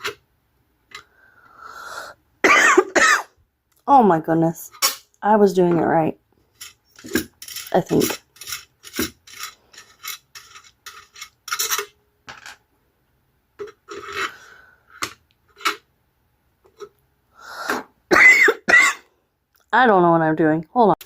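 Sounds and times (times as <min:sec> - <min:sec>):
hard parts clicking and knocking: 0:06.5 - 0:12.6.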